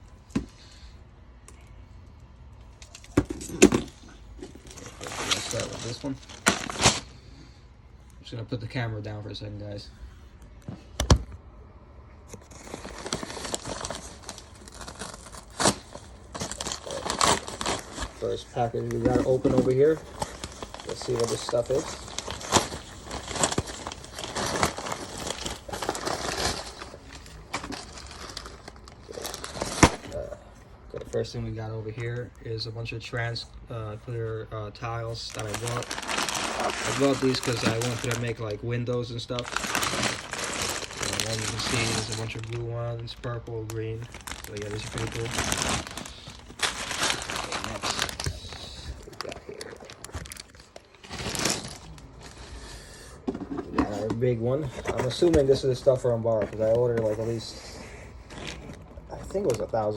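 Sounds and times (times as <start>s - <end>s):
packaging crinkling and rustling: 2.6s - 7.2s, 12.3s - 30.4s, 34.8s - 59.9s.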